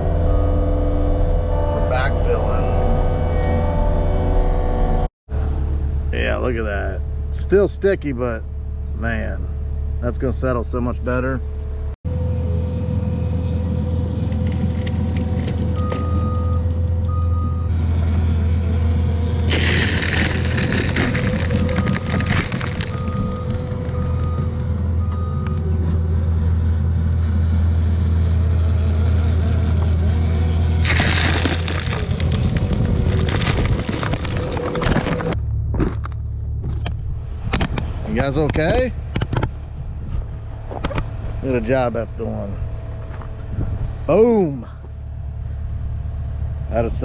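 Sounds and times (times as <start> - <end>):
diesel engine under load: 0.0 - 47.0
rake churning soil: 17.7 - 24.3, 26.0 - 35.4.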